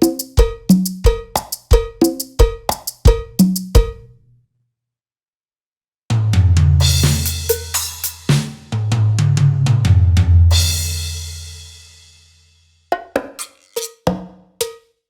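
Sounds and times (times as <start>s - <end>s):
electronic snare and drum strikes: 0.0s - 4.0s.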